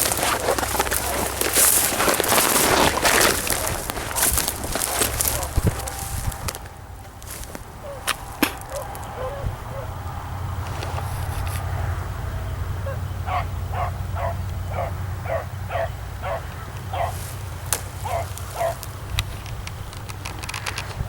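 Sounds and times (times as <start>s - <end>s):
sharp cracks: 0.0s - 9.2s, 16.6s - 21.0s
dogs barking: 0.0s - 10.7s, 12.4s - 19.2s.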